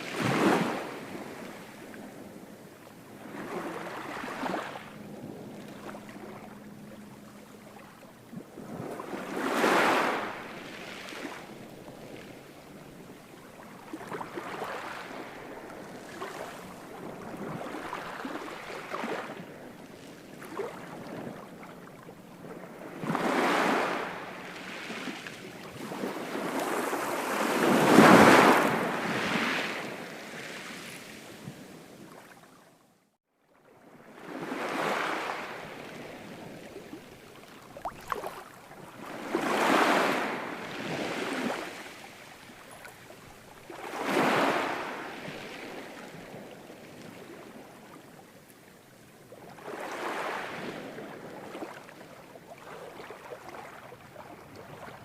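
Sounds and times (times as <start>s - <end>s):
ocean waves breaking: 0.0s - 32.2s, 33.7s - 48.2s.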